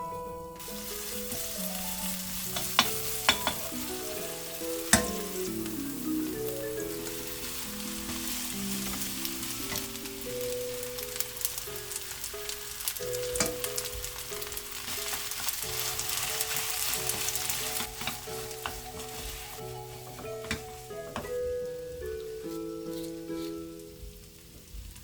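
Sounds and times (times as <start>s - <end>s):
soft melodic background tune: 0.0s - 25.0s
food sizzling in a pan: 0.1s - 25.0s
utensil clicking against pan: 2.0s - 5.8s, 7.8s - 19.1s.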